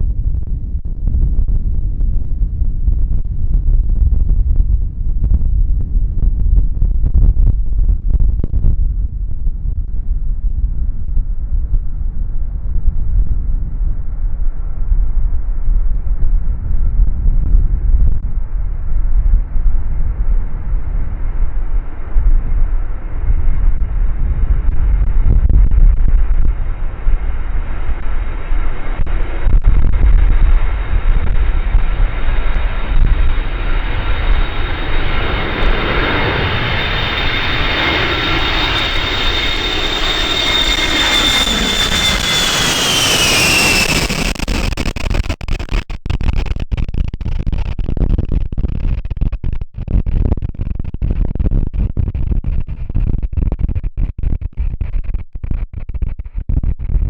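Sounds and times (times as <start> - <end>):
wind buffeting microphone: 15.1 - 57.0
jet aircraft passing low: 26.4 - 45.8.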